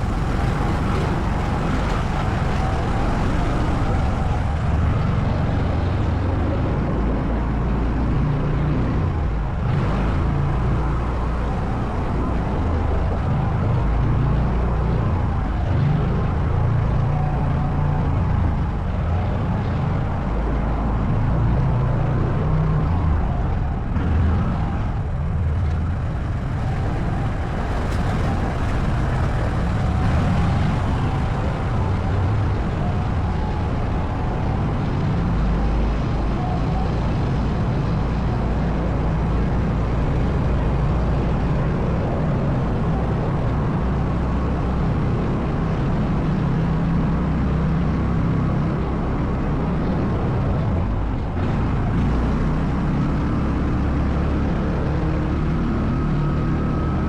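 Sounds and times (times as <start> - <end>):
atv engine running: 0.0 - 5.7, 24.0 - 35.2.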